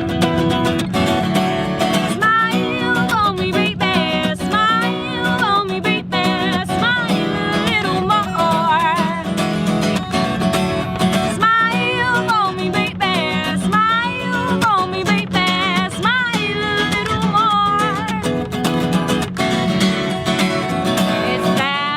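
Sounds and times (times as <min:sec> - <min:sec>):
acoustic guitar: 0:00.0 - 0:21.9
woman singing: 0:01.9 - 0:10.4, 0:11.2 - 0:18.5, 0:21.0 - 0:21.9.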